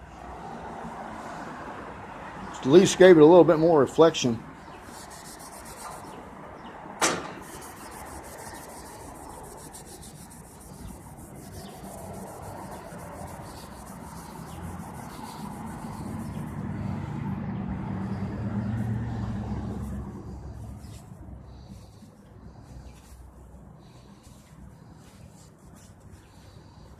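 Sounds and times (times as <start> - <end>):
hand rubbing steel handle: 4.9 - 6.2, 7.4 - 17.1.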